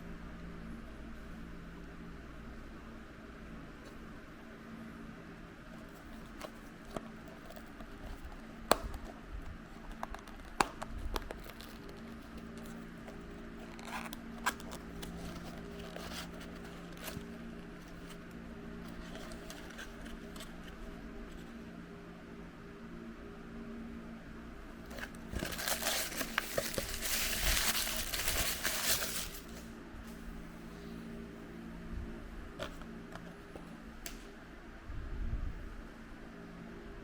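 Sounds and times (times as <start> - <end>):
steady low hum: 0.0 - 37.0
packaging crinkling and tearing: 9.8 - 18.2, 24.9 - 29.7.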